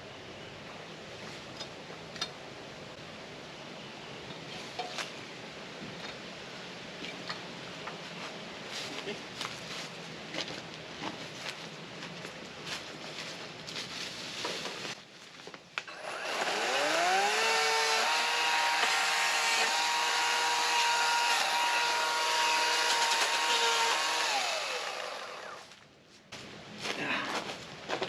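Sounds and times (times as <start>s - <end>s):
power saw whining: 15.9s - 25.7s.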